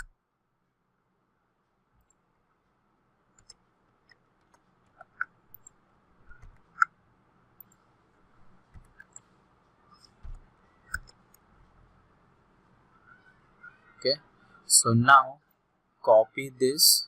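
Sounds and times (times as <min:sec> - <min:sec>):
computer mouse clicking: 0:03.4 - 0:06.9, 0:07.6 - 0:07.8, 0:08.7 - 0:09.3, 0:10.0 - 0:11.4.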